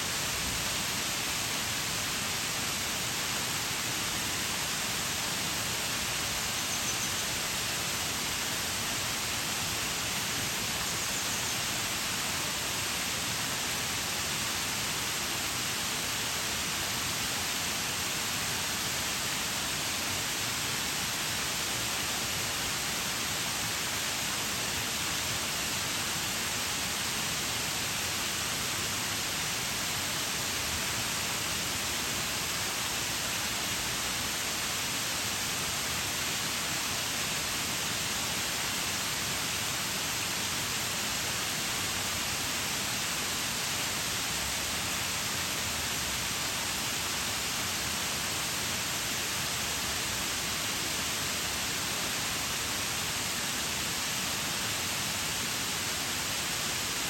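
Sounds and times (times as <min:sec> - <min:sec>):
waterfall splashing: 0:00.0 - 0:57.0.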